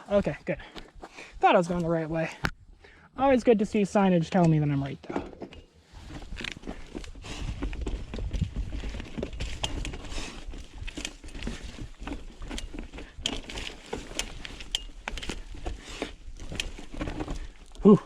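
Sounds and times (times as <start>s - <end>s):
bike knocks and rattles: 4.6s - 18.0s.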